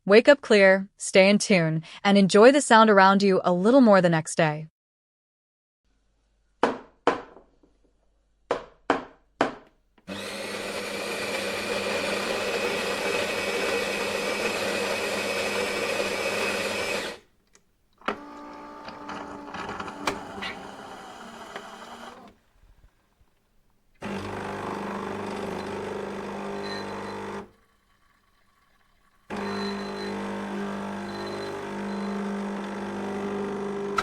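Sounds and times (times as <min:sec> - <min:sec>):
coffee grinder motor grinding: 0:10.1 - 0:17.3, 0:18.0 - 0:22.4, 0:24.0 - 0:34.0.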